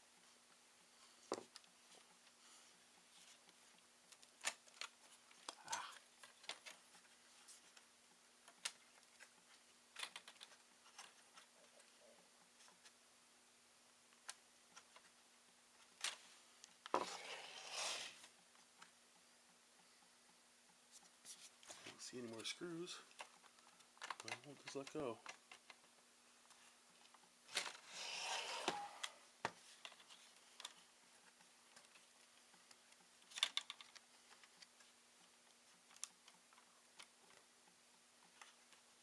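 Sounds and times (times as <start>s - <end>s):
faint steady hum: 0.0s - 39.0s
screwdriver and plastic parts clicking: 10.0s - 11.5s, 23.1s - 25.9s, 33.2s - 34.8s
short scraping rub: 17.0s - 18.2s, 27.8s - 29.2s.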